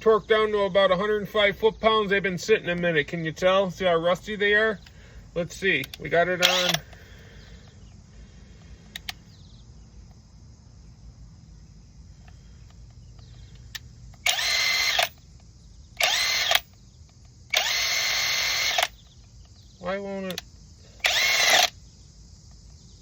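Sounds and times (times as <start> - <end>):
tool and socket clicks: 5.8 - 7.0, 8.9 - 9.2
impact driver bursts on lug nut: 5.8 - 7.1, 12.3 - 15.2, 16.0 - 16.8, 17.5 - 19.6, 21.0 - 21.8.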